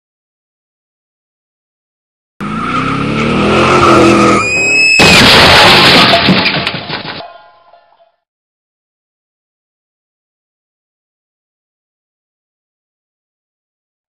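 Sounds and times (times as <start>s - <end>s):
tyres skidding under braking: 2.4s - 7.2s
tyre squeal: 3.7s - 5.2s.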